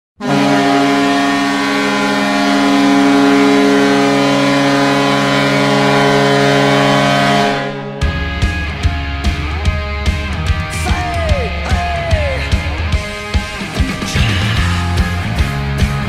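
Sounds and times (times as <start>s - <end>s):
air horns blowing a chord: 0.2s - 8.5s
rock music: 0.2s - 16.0s.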